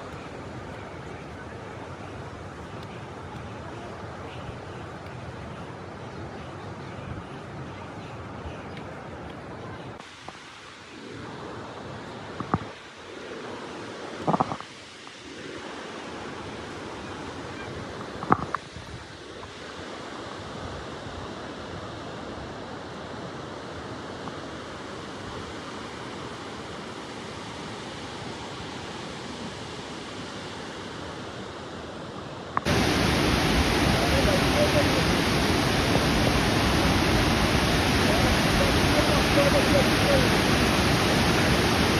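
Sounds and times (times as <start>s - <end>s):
waterfall rushing: 32.6s - 41.9s.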